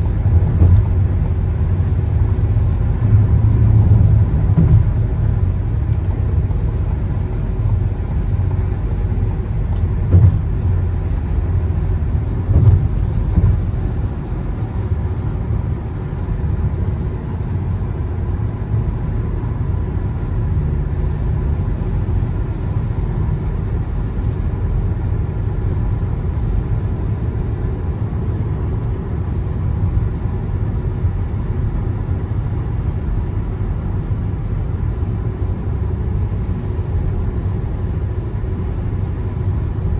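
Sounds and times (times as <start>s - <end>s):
car road and engine rumble: 0.0s - 39.9s
short knocks: 10.1s - 10.6s, 12.5s - 13.7s.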